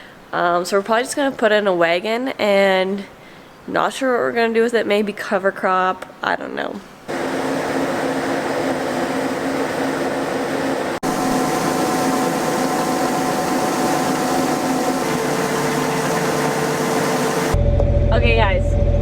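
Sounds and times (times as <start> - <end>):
grain auger machinery humming: 7.1 - 17.6.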